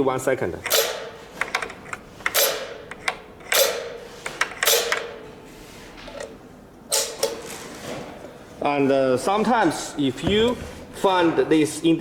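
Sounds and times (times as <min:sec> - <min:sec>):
metal clamps clacking: 0:00.6 - 0:05.2, 0:06.1 - 0:07.5.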